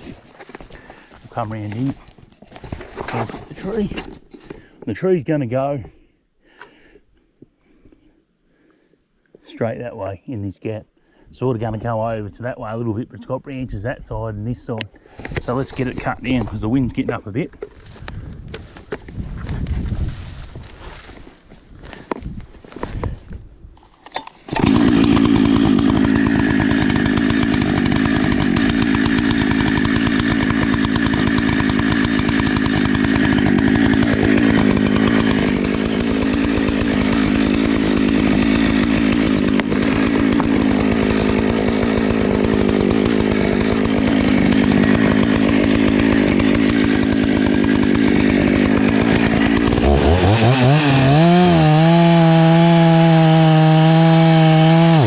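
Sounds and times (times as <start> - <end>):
chainsaw cutting wood: 24.1 - 55.0.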